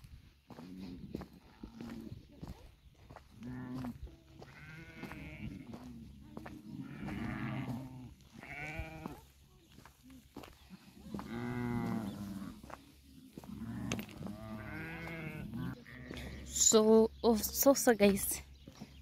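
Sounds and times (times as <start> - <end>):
sheep bleating: 3.4 - 9.3, 10.7 - 16.4.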